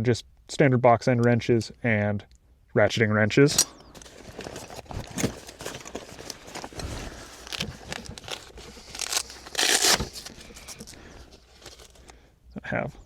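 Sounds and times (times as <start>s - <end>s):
metal wrenches clinking: 3.5s - 6.7s
cloth rustling: 3.5s - 12.0s.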